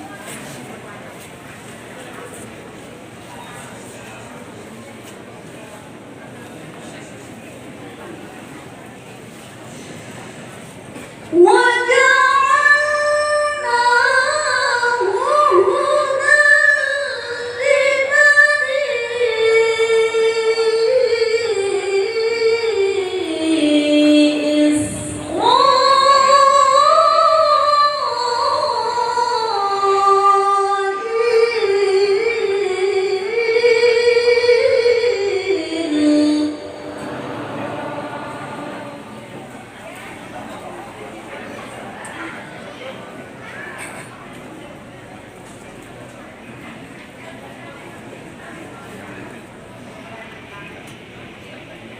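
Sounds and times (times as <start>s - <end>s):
high voice chanting melodically: 34.3s - 39.4s.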